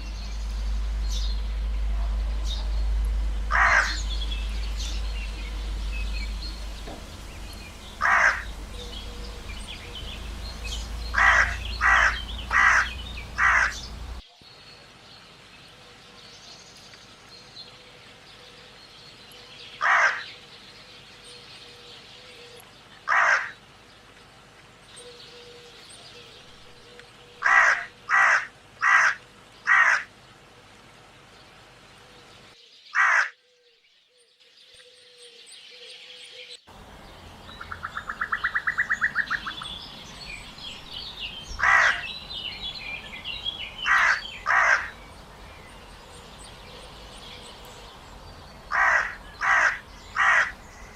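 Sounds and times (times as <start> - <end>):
small birds chirping: 0.0 - 50.9
fast rattling bird call: 3.4 - 14.2, 19.8 - 20.3, 23.0 - 23.6, 27.4 - 30.1, 32.9 - 33.4, 37.6 - 39.8, 41.4 - 42.6, 43.7 - 45.1, 48.7 - 50.9
crows cawing: 3.5 - 4.1, 7.9 - 9.3, 11.0 - 14.2, 19.8 - 20.4, 23.1 - 23.6, 27.4 - 30.1, 32.9 - 33.4, 41.5 - 42.2, 43.8 - 45.1, 48.7 - 50.9.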